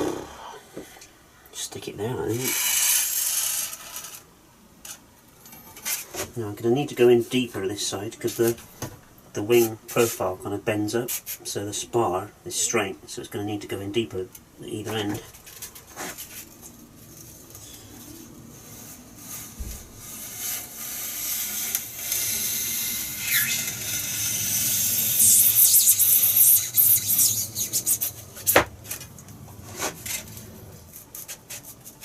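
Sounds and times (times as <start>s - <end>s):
foam being scraped and rubbed: 15.8s - 28.7s, 29.6s - 32.0s.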